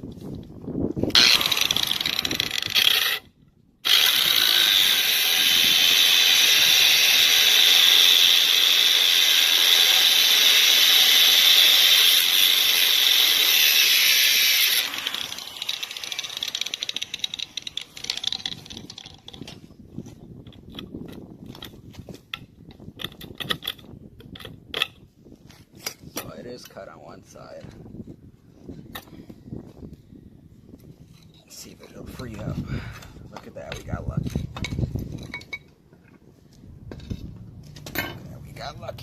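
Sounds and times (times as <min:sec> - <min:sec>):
power tool grinding metal: 0:01.1 - 0:03.2, 0:03.8 - 0:19.4.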